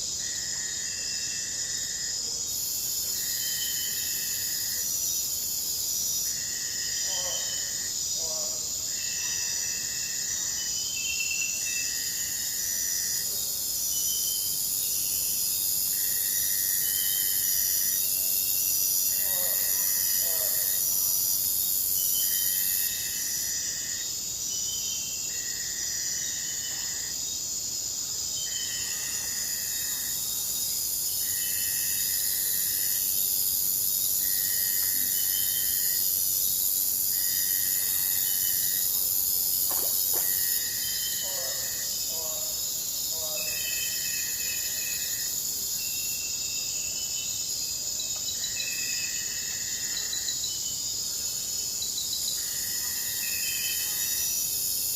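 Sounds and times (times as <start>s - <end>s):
insect calls: 0.0s - 54.9s
high shrill insect drone: 0.2s - 5.3s, 8.9s - 27.4s, 28.4s - 47.6s
short insect chirps: 37.1s - 41.5s.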